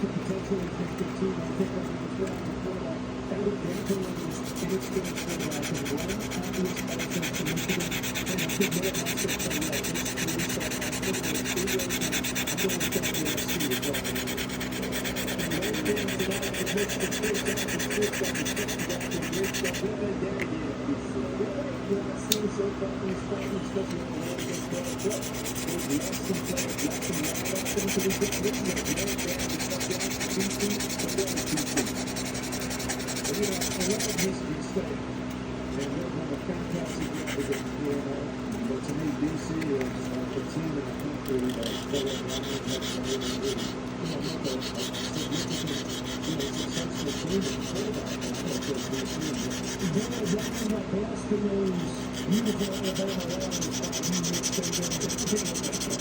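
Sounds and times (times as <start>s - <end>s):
steady low hum: 0.0s - 56.0s
abrasive rubbing strokes on knife: 3.7s - 19.9s, 24.1s - 34.3s, 41.5s - 50.7s, 51.7s - 56.0s.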